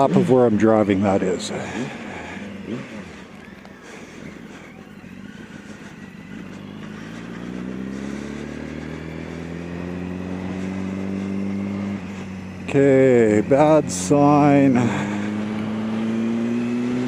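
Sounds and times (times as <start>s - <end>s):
motorcycle engine accelerating: 0.0s - 17.0s.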